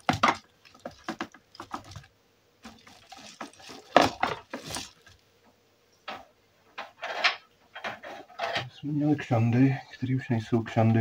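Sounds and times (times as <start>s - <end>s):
computer cables clicking and clattering: 0.0s - 5.2s.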